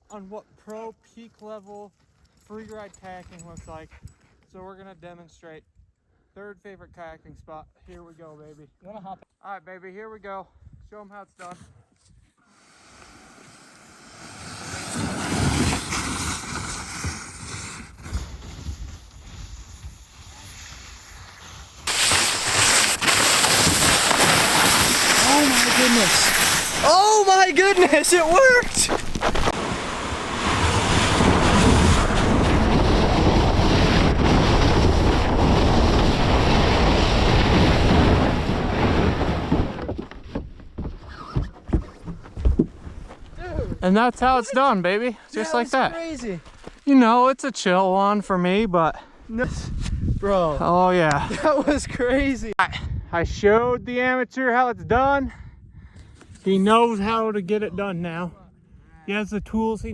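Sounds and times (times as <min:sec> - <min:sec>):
kayak hull scraping on dirt: 0:12.7 - 0:35.4, 0:36.1 - 0:43.4
wind buffeting microphone: 0:21.8 - 0:40.6, 0:49.3 - 0:54.1, 0:54.8 - 0:56.4.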